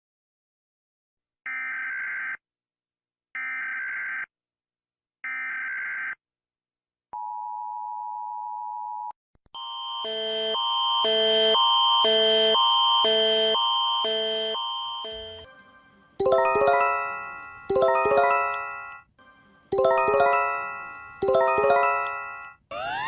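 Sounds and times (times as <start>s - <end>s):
alarm of alternating tones: 9.6s - 15.5s, 16.2s - 19.0s, 19.8s - 23.0s.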